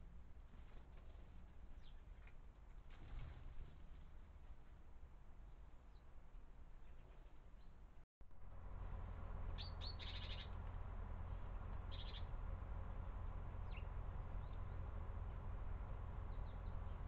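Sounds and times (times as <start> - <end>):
low background rumble: 0.0 - 17.0
small birds chirping: 9.6 - 10.6, 11.8 - 12.3, 13.0 - 15.4, 16.2 - 17.0.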